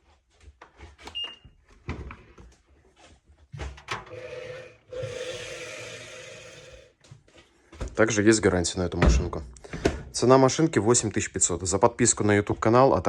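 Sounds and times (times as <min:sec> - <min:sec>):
washing machine beep: 0:01.1 - 0:01.5
washing machine hiss and hum: 0:04.0 - 0:06.8.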